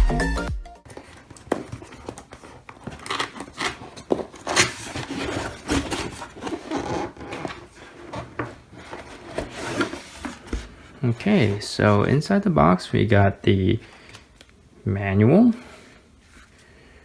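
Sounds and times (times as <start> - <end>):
cardboard rubbing and scraping: 1.0 - 11.9.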